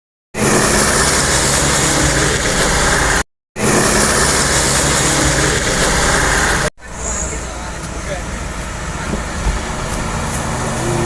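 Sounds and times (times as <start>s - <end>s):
truck engine running: 0.4s - 11.0s.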